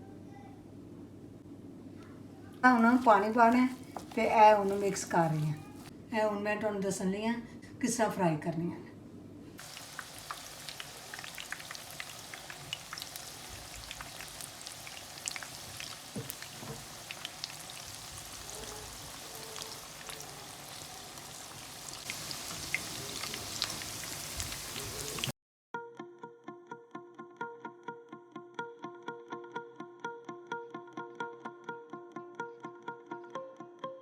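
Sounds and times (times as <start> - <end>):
food deep-frying in oil: 9.6 - 25.3.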